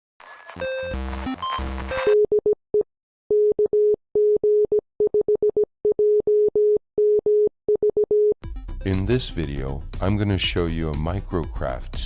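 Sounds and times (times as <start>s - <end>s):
morse code beeps: 0.6s - 2.5s.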